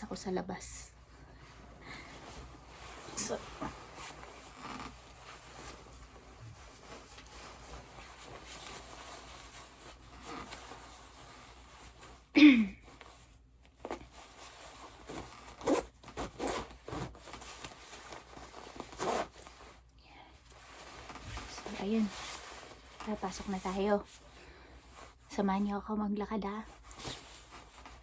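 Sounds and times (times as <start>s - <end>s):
jacket rustling: 0.9s - 25.7s, 26.5s - 28.0s
zipper zipping: 1.9s - 12.0s, 14.0s - 19.6s.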